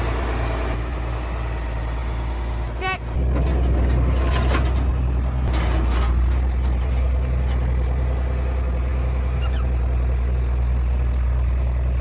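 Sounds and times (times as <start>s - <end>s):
engine humming: 0.0s - 12.0s.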